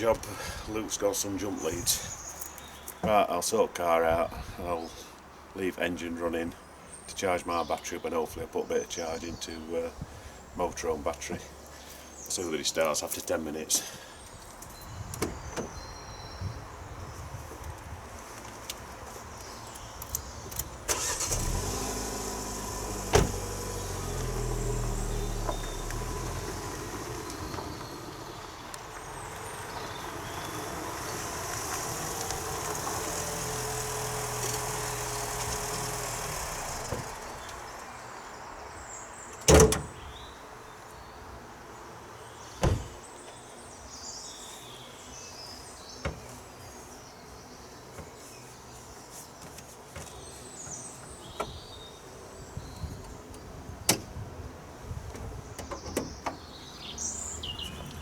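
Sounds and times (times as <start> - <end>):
car engine running: 21.0 - 37.7
car door slams: 22.3 - 23.8, 34.4 - 37.4, 39.4 - 40.0, 42.6 - 43.0.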